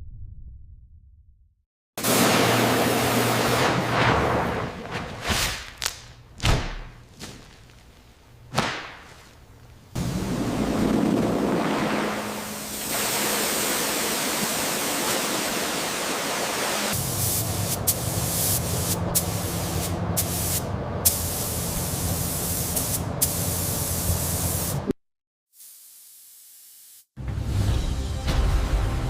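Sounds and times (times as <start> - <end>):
paint spray gun hissing: 12.6 - 24.8, 25.6 - 27.1.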